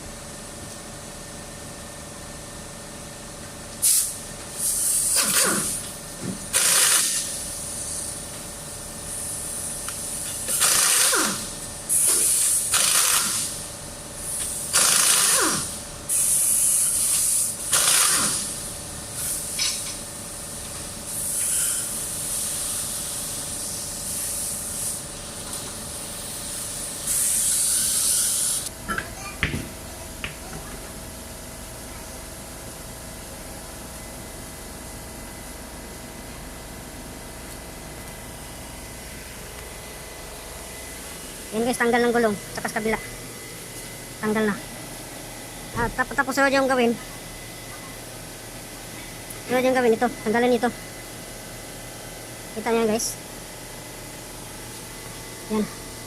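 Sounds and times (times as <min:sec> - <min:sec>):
impact wrench bursts: 0:06.5 - 0:08.0, 0:10.5 - 0:13.6, 0:14.4 - 0:18.6.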